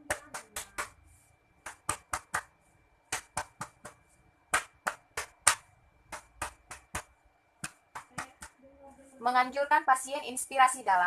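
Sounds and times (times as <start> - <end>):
hands clapping on a back: 0.0 - 1.0, 1.6 - 8.6.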